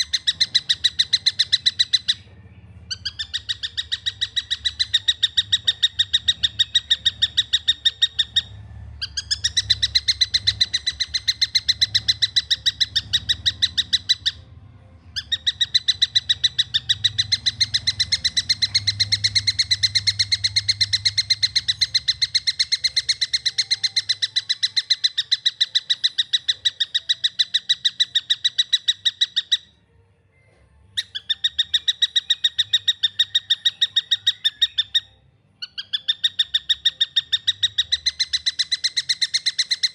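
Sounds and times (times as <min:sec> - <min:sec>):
kingfisher calling: 0:00.0 - 0:02.2, 0:02.9 - 0:14.4, 0:15.2 - 0:29.7.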